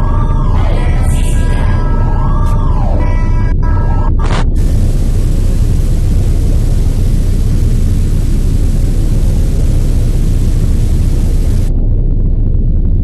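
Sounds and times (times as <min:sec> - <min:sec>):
deep earthquake rumble: 0:00.0 - 0:13.0
hiss: 0:04.6 - 0:11.7.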